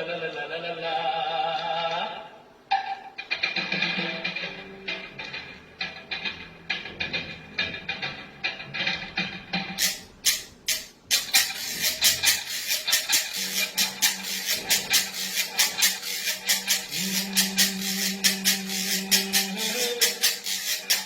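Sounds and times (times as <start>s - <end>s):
shaker rattling rhythmically: 9.8s - 21.0s.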